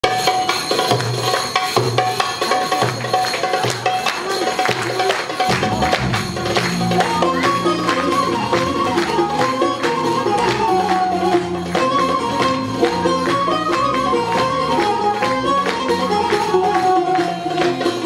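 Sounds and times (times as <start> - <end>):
steady percussion beat: 5.5 - 7.2.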